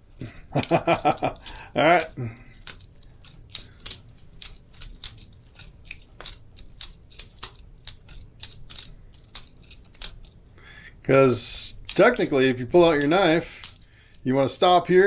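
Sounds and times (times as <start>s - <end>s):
butterfly knife clacking: 11.7s - 13.8s.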